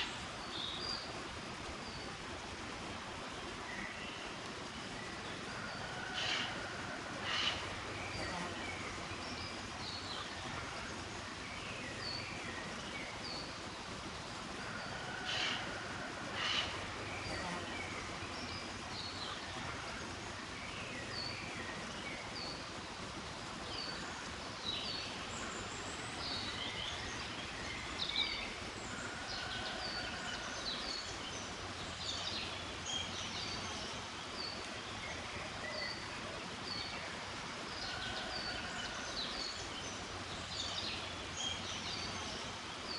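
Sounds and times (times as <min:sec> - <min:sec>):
steady hiss: 0:00.0 - 0:42.9
sharp bird calls: 0:16.3 - 0:16.8.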